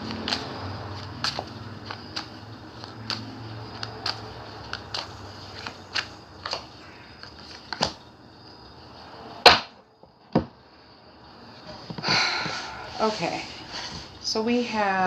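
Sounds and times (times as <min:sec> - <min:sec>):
cards being shuffled: 0:00.0 - 0:08.0.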